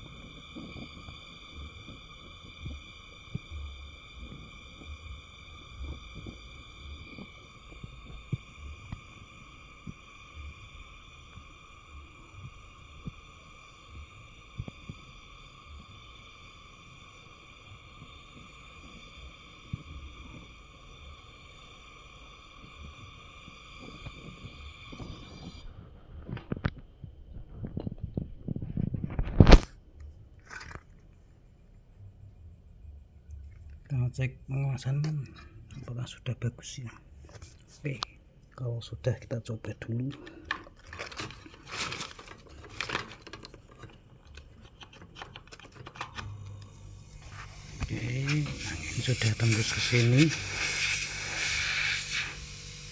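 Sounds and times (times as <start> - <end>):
brazing torch high whine: 0.0 - 25.7, 46.2 - 52.9.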